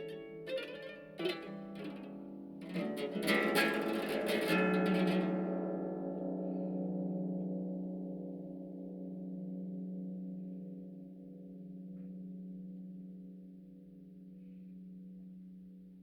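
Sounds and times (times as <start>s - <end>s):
harp plucked notes: 0.0s - 6.9s.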